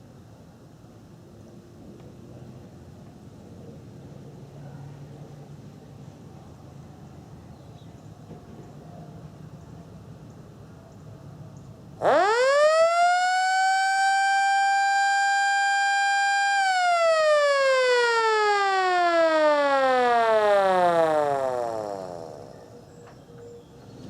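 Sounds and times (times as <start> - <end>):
electromechanical siren winding: 12.0 - 22.5.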